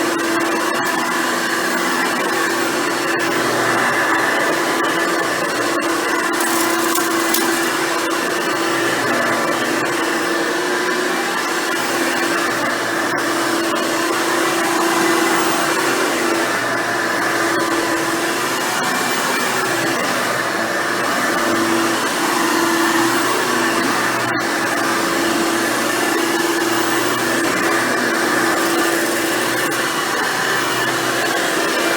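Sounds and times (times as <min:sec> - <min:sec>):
vacuum cleaner running: 0:06.4 - 0:08.0.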